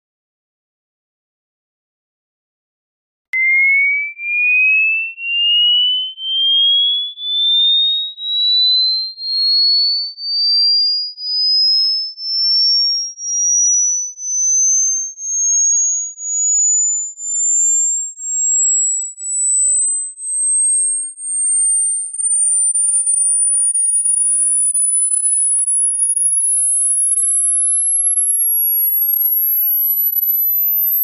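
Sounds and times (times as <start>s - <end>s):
high pure tone sweeping upward: 3.4s - 7.0s.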